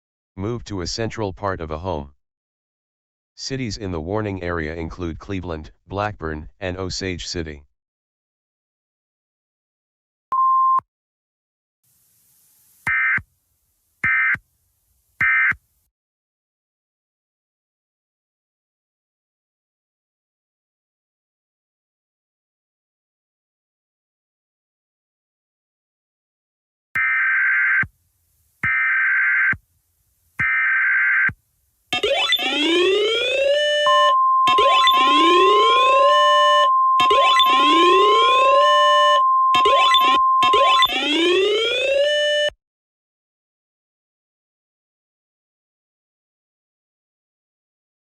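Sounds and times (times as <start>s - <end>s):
short steady beep: 10.3s - 10.8s, 33.9s - 35.2s, 36.5s - 37.8s, 39.0s - 41.0s
steady high tone: 32.0s - 41.7s
alert tone sweeping upward: 32.0s - 42.1s
digital data bursts: 34.5s - 35.6s, 37.0s - 38.2s, 39.6s - 41.2s
harsh buzzy data bursts: 39.6s - 41.1s.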